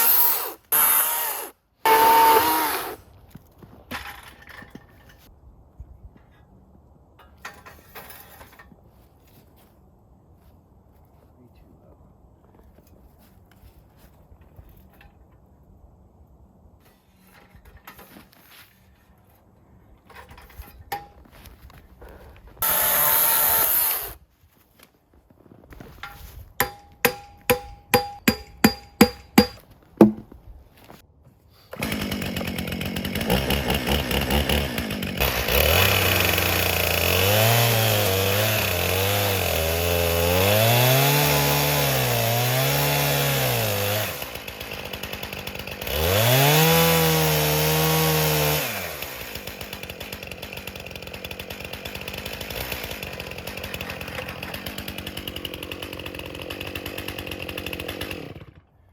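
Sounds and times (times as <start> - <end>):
chainsaw revving: 0.0 - 3.0, 22.6 - 24.2, 31.7 - 58.6
sharp metallic taps: 26.6 - 30.4
handling noise: 28.6 - 31.0.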